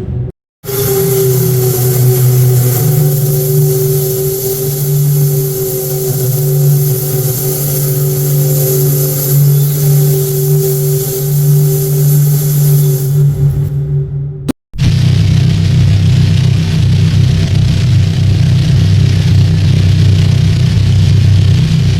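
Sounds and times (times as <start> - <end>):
hiss of steam: 0.6 - 13.8
deep steam whistle blast: 0.6 - 15.3.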